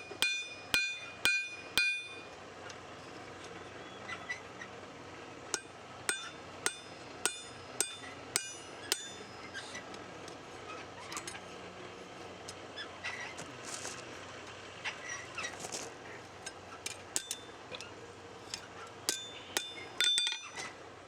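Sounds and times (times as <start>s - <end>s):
hammer striking steel on anvil: 0.0s - 2.3s, 5.5s - 9.6s, 17.2s - 17.5s, 18.5s - 20.7s.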